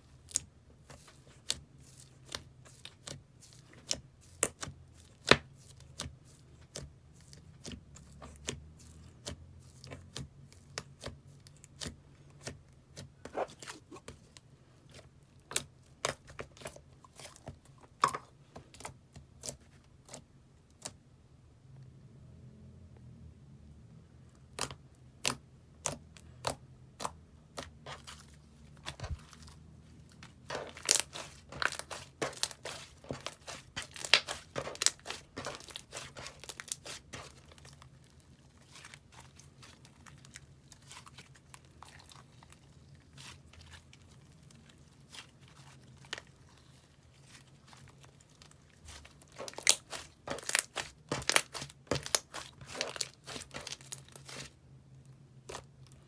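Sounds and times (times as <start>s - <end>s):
slime crackling and popping: 28.8s - 54.5s.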